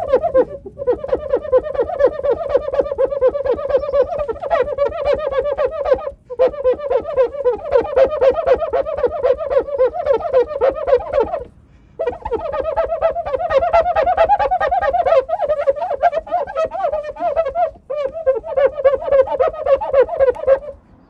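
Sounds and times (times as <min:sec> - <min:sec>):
wet rag squeaking on glass: 0:00.0 - 0:20.8.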